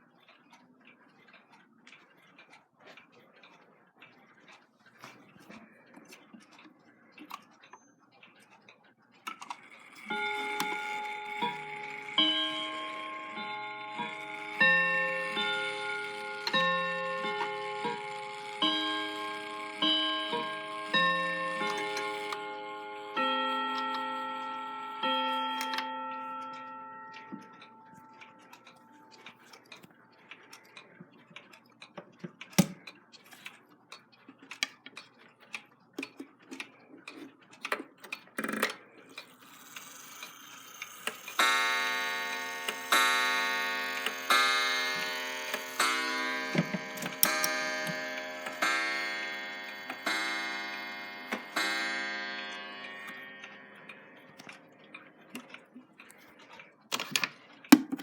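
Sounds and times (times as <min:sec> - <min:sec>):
mechanical clock ticking: 0:00.0 - 0:58.0
clock chime strokes: 0:09.9 - 0:29.3, 0:39.5 - 0:55.5.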